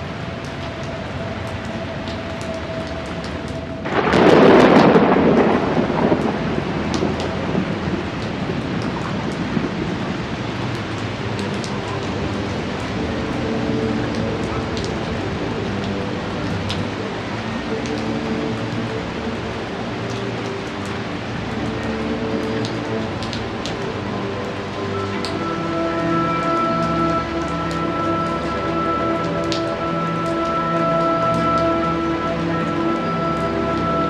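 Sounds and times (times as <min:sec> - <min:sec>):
steady rain falling: 0:00.0 - 0:34.0
thunder clap rumbling: 0:02.6 - 0:11.6.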